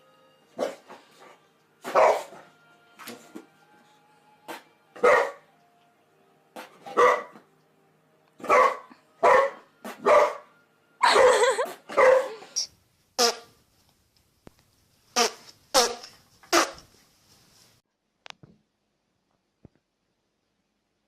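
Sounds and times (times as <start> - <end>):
dog barking: 0.6 - 0.9, 1.8 - 2.4, 5.0 - 5.5, 6.7 - 7.4, 8.4 - 12.5.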